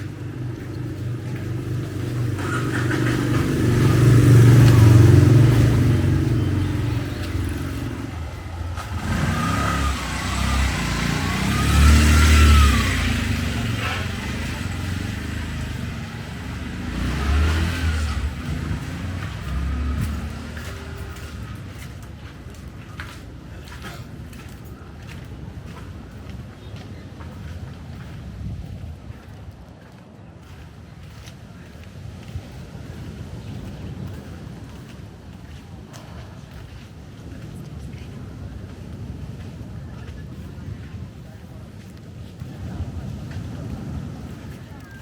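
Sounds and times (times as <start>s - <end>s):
motorbike engine: 0.0s - 22.9s
road traffic: 0.0s - 45.0s.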